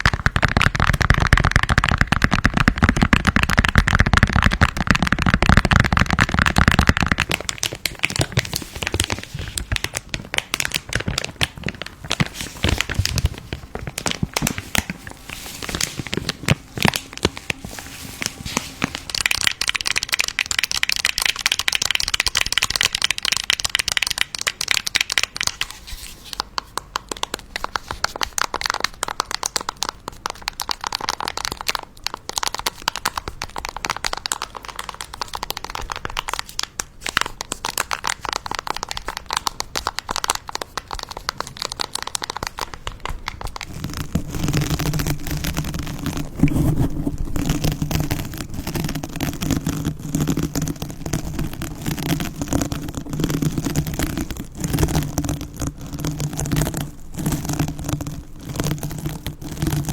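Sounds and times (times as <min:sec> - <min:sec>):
hard candies clicking: 0:00.0 - 0:17.7, 0:18.7 - 0:25.7, 0:26.4 - 0:59.9
paper crackling and crinkling: 0:05.9 - 0:20.2, 0:34.3 - 0:59.9.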